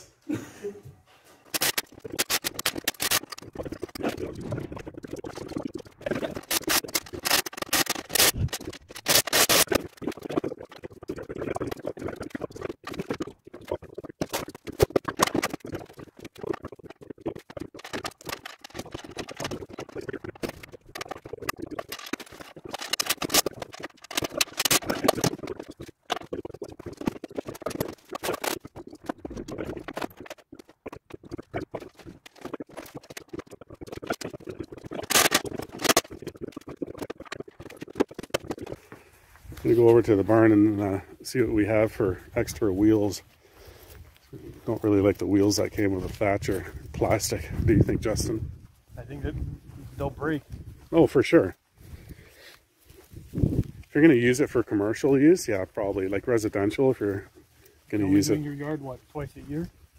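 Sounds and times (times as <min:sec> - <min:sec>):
metal parts clicking and scraping: 0:01.5 - 0:04.1, 0:06.2 - 0:09.8, 0:17.7 - 0:31.2, 0:34.0 - 0:36.2.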